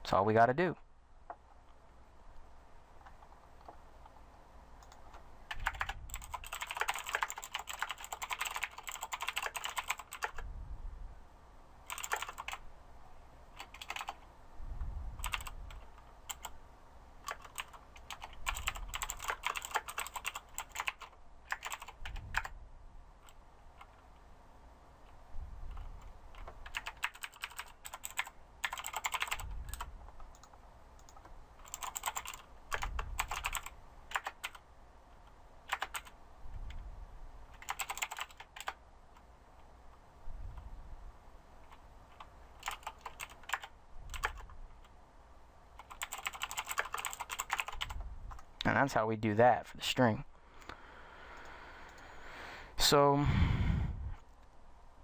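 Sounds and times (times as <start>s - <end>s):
computer keyboard typing: 4.8s - 10.4s, 11.8s - 12.6s, 13.5s - 14.3s, 15.2s - 16.6s, 17.2s - 22.5s, 25.7s - 34.6s, 35.6s - 36.2s, 37.5s - 38.8s, 41.6s - 44.9s, 45.8s - 48.5s.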